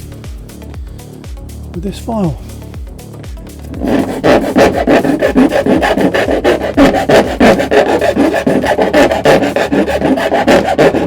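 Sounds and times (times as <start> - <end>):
hand file rasping: 3.7 - 11.0.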